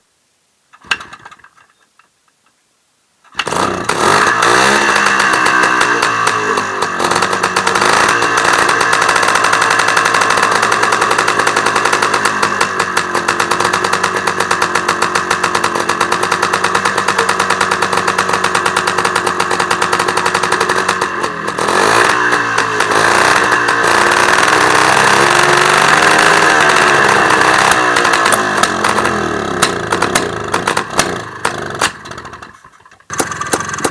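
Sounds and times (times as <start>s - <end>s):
two-stroke engine running: 3.3s - 33.9s.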